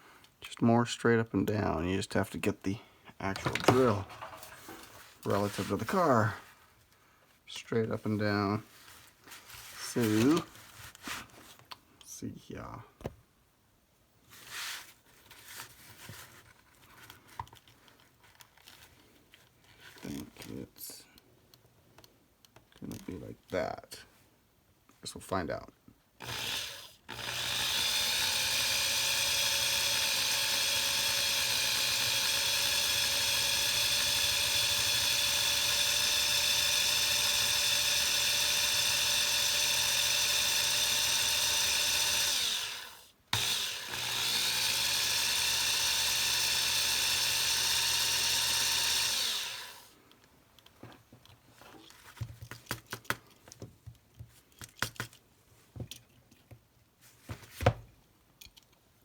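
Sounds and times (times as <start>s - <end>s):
electric drill drilling: 3.4s - 4.3s, 26.2s - 49.9s.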